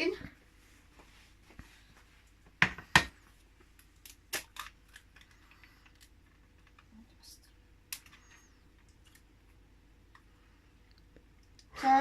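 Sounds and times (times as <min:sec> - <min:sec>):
kitchen items knocking on counter: 0:02.6 - 0:03.2.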